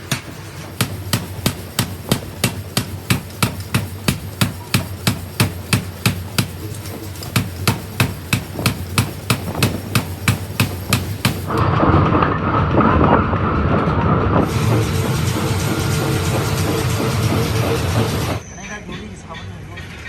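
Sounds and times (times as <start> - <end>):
machine striking metal rhythmically: 0.0 - 11.6, 14.1 - 18.4
low machine hum: 0.0 - 18.4.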